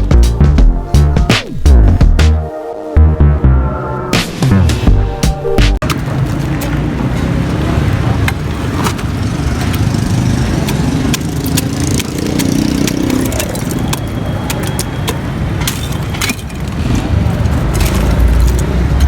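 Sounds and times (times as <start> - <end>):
motor traffic: 5.8 - 19.0.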